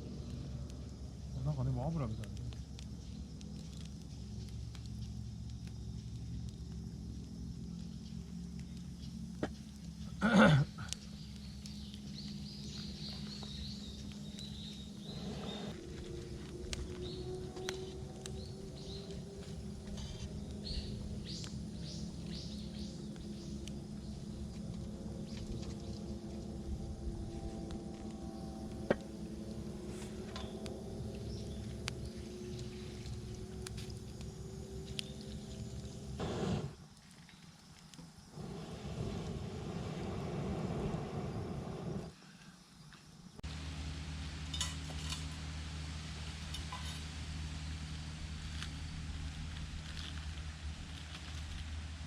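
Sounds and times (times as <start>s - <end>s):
small birds chirping: 0.0s - 26.6s, 30.2s - 37.5s
campfire crackling and popping: 0.0s - 42.1s, 43.4s - 52.0s
low hum: 10.9s - 36.8s, 38.3s - 42.1s, 43.4s - 52.0s.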